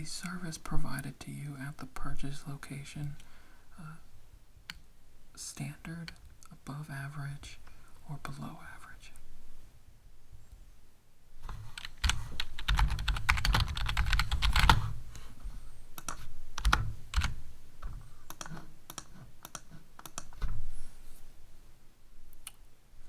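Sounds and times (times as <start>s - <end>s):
typing on computer keyboard: 11.8s - 14.9s, 16.0s - 20.4s.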